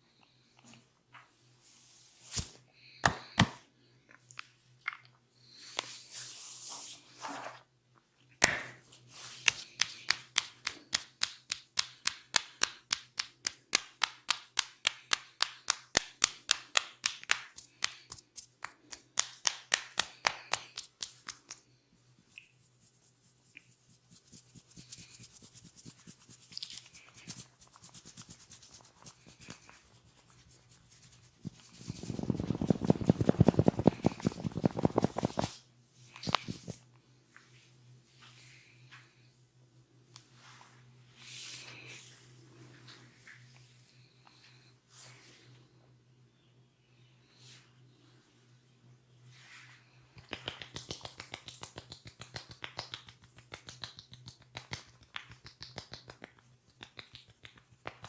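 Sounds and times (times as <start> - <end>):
hands rubbing skin: 9.0 - 36.8, 50.2 - 58.0.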